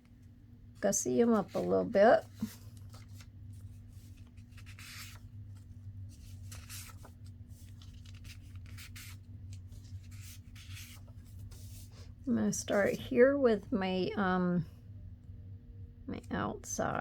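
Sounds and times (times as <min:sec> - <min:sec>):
steady low hum: 0:00.0 - 0:17.0
paper rustling and sliding: 0:01.2 - 0:12.1.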